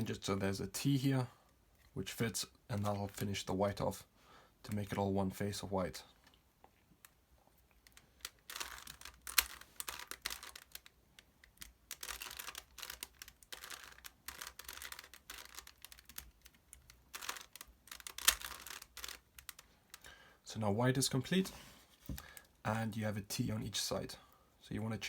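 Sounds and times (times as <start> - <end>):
puzzle cube clicking turns: 7.0 - 20.1.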